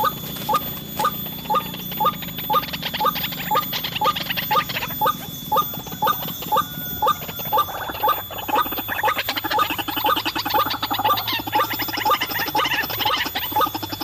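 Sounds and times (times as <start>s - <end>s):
chatter of bird calls: 0.0s - 14.0s
waterhen calling: 0.0s - 14.0s.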